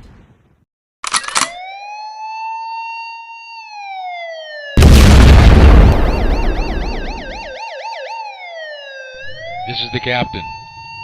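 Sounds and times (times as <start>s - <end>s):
electronic siren wailing: 1.4s - 11.0s
fast warbling siren: 1.5s - 11.0s
explosion blast: 4.8s - 7.3s.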